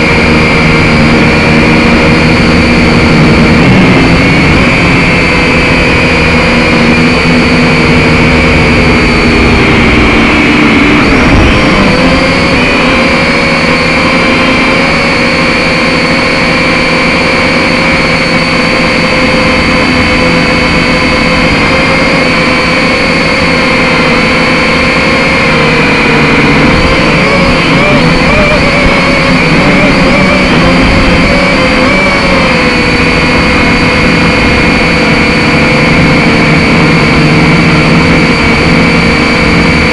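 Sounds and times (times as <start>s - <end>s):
drone propellers whining: 0.0s - 39.9s.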